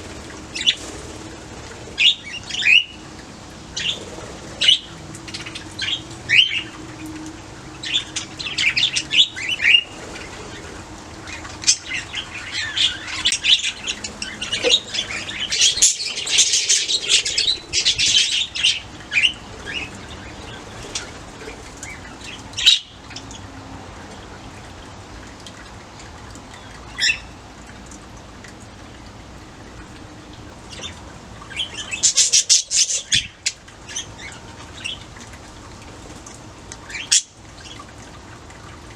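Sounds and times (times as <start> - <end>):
budgerigars chirping and warbling: 3.8 - 7.1, 7.8 - 23.4, 30.7 - 35.0, 36.9 - 37.8.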